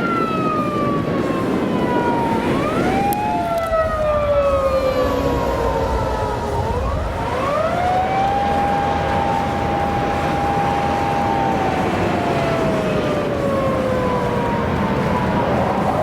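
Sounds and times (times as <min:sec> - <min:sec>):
police siren wailing: 0:00.0 - 0:16.0
traffic noise: 0:00.0 - 0:16.0.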